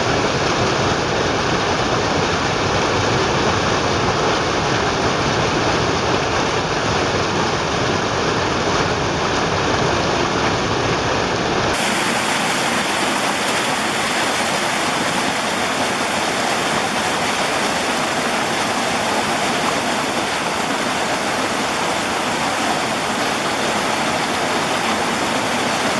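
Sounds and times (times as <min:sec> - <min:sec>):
stream rushing over small falls: 0:11.7 - 0:25.9.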